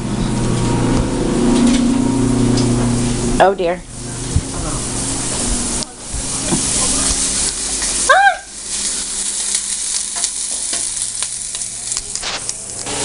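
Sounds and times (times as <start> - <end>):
food sizzling in a pan: 4.8 - 13.0.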